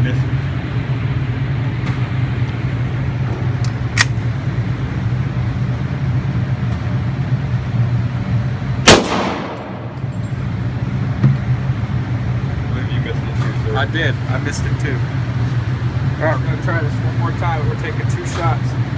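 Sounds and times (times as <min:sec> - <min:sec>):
low hum: 0:00.0 - 0:18.9
sharp click: 0:03.6 - 0:04.2
loud gunshot: 0:08.8 - 0:10.0.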